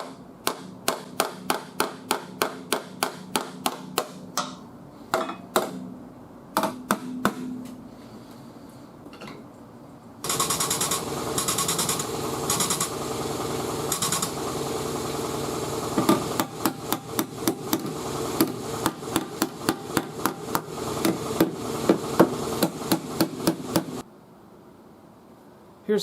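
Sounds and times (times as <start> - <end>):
steady machine noise: 10.2 - 24.0.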